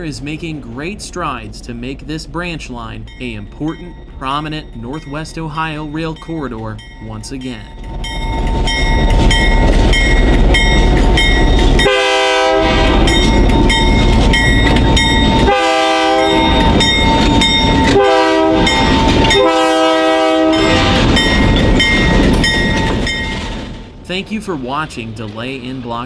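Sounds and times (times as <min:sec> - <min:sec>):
train rumbling past: 0:00.0 - 0:26.0
locomotive air horn: 0:11.8 - 0:13.3, 0:15.4 - 0:16.6, 0:17.8 - 0:21.5.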